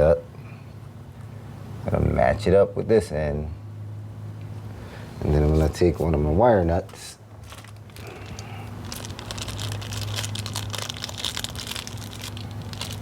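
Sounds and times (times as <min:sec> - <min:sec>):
steady low hum: 0:00.0 - 0:13.0
packaging crinkling: 0:07.3 - 0:13.0.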